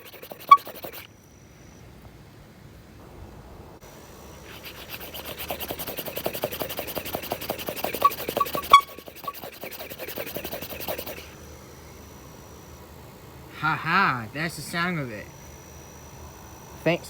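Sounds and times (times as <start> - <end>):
hand pump rasping strokes: 0.0 - 1.1, 4.4 - 11.3
weak air horn toots: 7.8 - 9.4.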